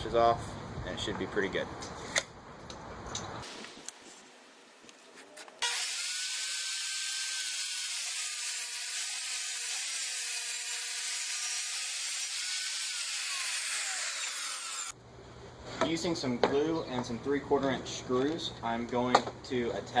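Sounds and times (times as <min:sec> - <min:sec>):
power saw cutting wood: 0:03.4 - 0:15.0.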